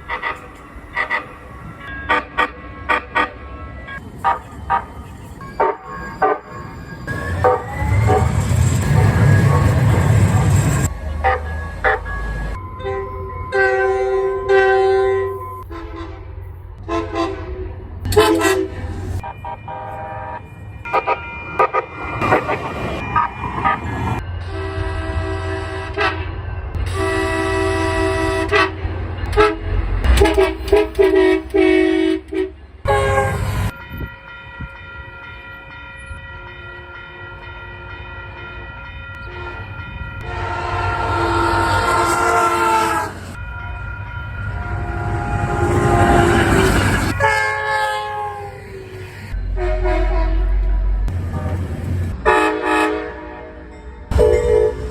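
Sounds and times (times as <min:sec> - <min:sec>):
locomotive air horn blasts: 0:00.0 - 0:03.4, 0:05.6 - 0:08.4, 0:11.2 - 0:12.1, 0:12.8 - 0:22.0, 0:24.4 - 0:33.7, 0:39.2 - 0:43.4, 0:44.4 - 0:48.8, 0:49.4 - 0:54.9
rushing train noise: 0:00.0 - 0:54.9.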